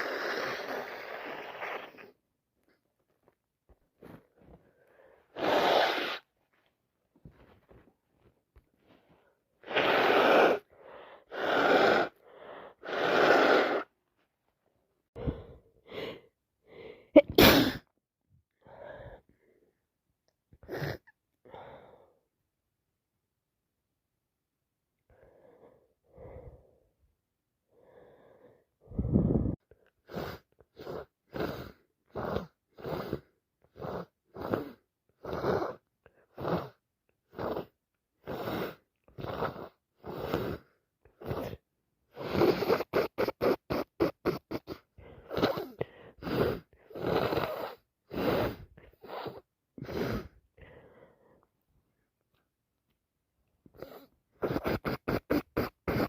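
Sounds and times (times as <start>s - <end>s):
person sniffing through blocked nose: 0.0s - 2.2s, 5.0s - 6.3s, 9.6s - 14.0s, 17.2s - 17.8s, 20.6s - 21.1s, 29.0s - 51.1s, 53.7s - 56.0s.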